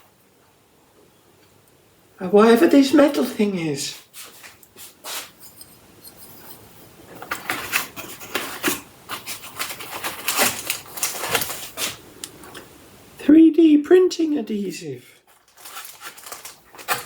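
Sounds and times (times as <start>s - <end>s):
packaging crinkling and tapping: 7.1s - 12.6s, 15.3s - 17.0s.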